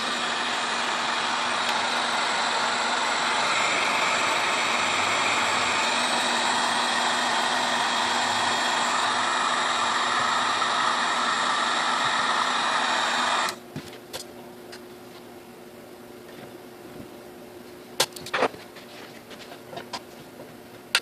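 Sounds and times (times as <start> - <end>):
heat gun blowing: 0.0 - 13.6.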